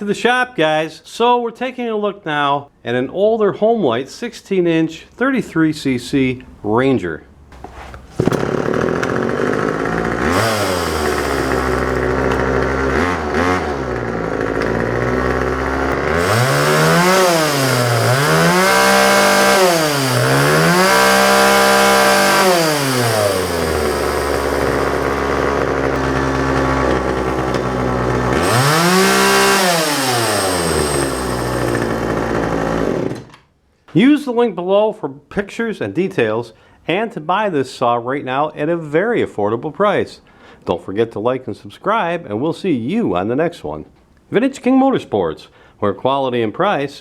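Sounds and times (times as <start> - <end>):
chainsaw idling and revving: 8.2 - 33.3.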